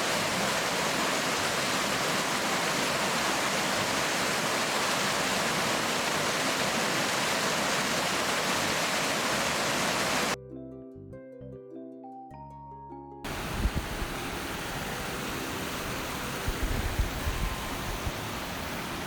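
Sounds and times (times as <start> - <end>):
rushing water: 0.0 - 10.4, 13.3 - 19.0
soft bell-like instrumental music: 10.4 - 13.3, 13.9 - 18.6.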